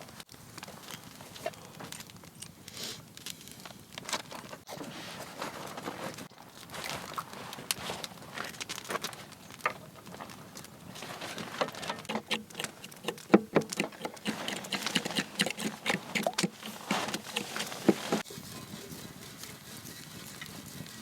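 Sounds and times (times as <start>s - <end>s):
rapid patter of light taps: 12.0s - 18.2s.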